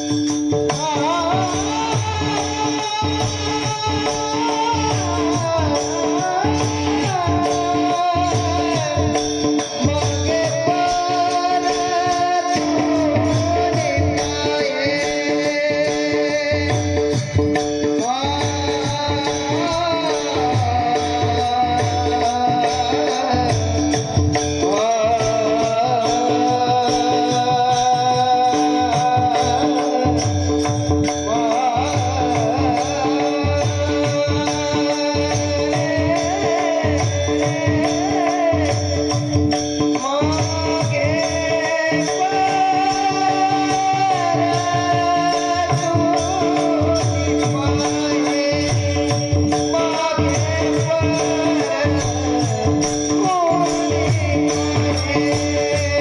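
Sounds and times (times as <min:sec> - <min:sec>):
drum beats: 0:00.0 - 0:56.0
harmonium-like drone: 0:00.0 - 0:56.0
jingling percussion: 0:00.0 - 0:56.0
person singing ornamented melody: 0:00.7 - 0:56.0.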